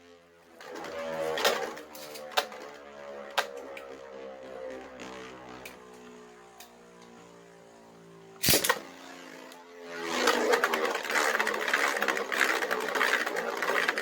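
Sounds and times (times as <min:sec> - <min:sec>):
spinning tops rattling and clashing: 0:00.6 - 0:02.8, 0:08.4 - 0:08.8, 0:10.2 - 0:14.0.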